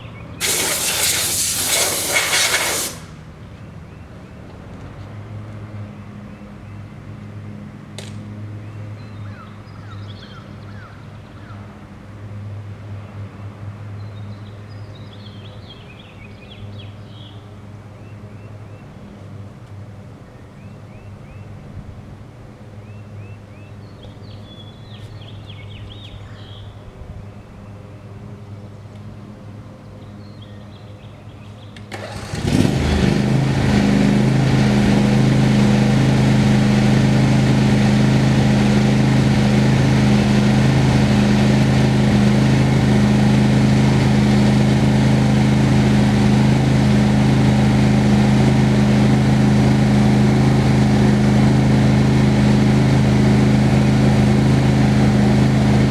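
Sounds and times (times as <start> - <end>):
sawmill engine running: 0.4 - 3.5, 31.9 - 55.9.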